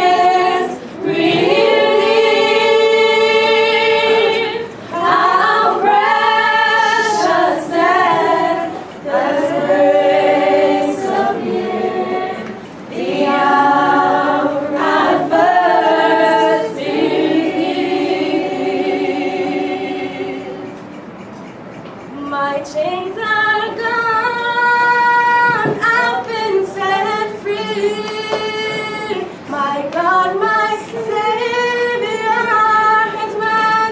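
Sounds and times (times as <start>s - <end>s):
women singing unaccompanied: 0.0s - 20.7s, 22.2s - 33.9s.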